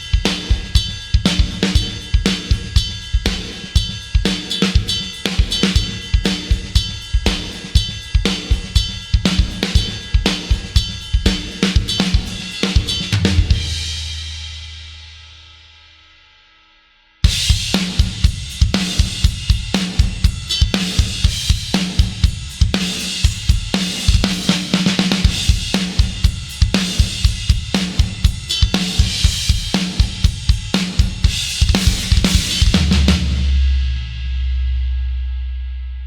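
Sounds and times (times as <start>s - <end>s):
drum kit groove: 0.0s - 15.4s, 17.2s - 34.8s
kick drum strokes: 17.3s - 33.6s.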